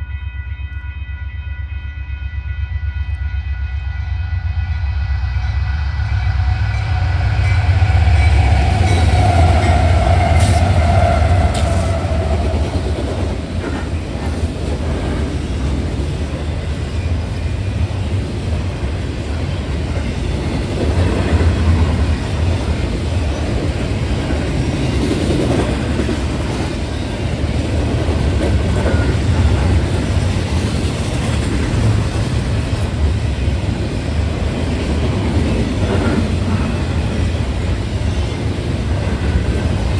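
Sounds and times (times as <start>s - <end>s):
locomotive horn: 0.0s - 13.9s
train rumbling past: 2.6s - 39.9s
wheels clattering on rail joints: 8.5s - 39.9s.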